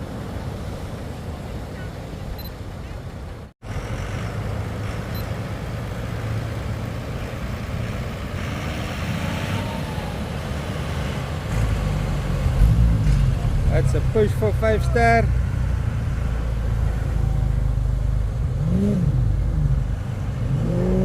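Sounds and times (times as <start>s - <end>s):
outboard engines idling: 9.8s - 20.5s.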